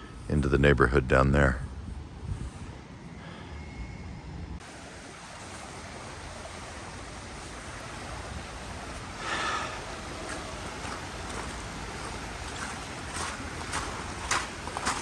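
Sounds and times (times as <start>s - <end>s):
river rushing: 4.6s - 15.0s.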